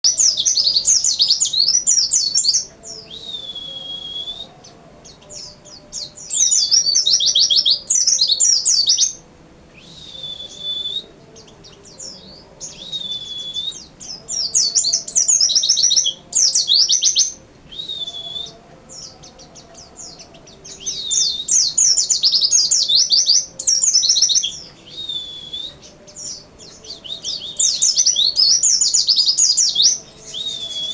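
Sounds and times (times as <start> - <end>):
bird whistled note: 3.2 - 4.5.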